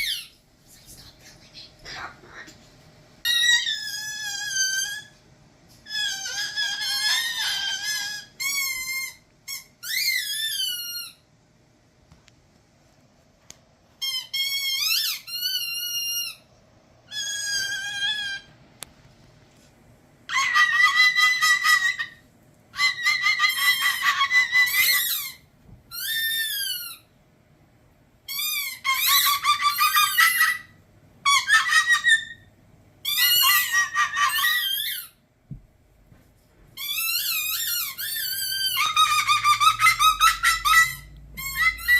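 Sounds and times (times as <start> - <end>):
cockatoo squealing: 0.0 - 0.4, 3.2 - 5.2, 5.8 - 11.2, 14.0 - 16.5, 17.1 - 18.6, 20.3 - 27.1, 28.3 - 35.2, 36.8 - 41.9.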